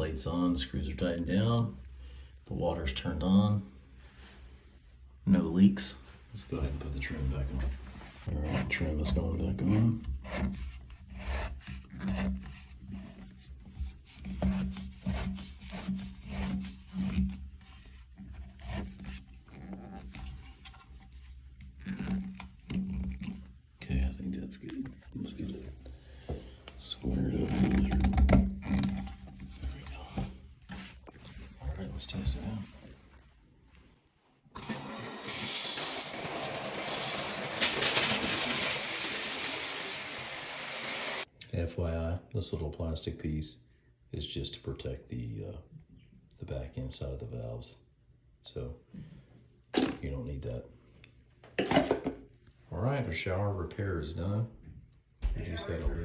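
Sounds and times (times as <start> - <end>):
shower spray hissing: 34.8 - 41.3.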